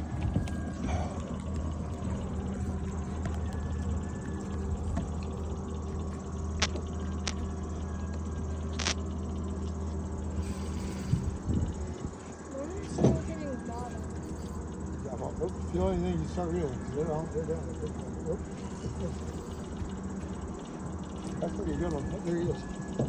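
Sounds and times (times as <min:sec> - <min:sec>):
boat engine humming: 0:00.0 - 0:23.0
sharp clicks: 0:08.7 - 0:09.1.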